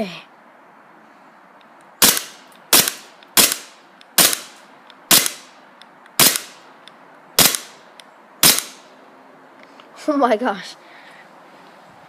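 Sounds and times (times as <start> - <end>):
airsoft pistol shots: 2.0 - 4.5, 5.1 - 5.5, 6.2 - 6.6, 7.4 - 7.8, 8.4 - 8.8.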